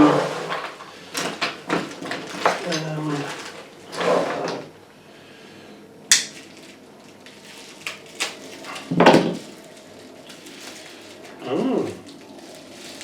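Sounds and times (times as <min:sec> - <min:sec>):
tearing rustle: 0:00.0 - 0:04.5, 0:06.3 - 0:13.0
wrapping crinkling: 0:01.1 - 0:04.0, 0:06.3 - 0:13.0
sharp crack: 0:06.1 - 0:06.5.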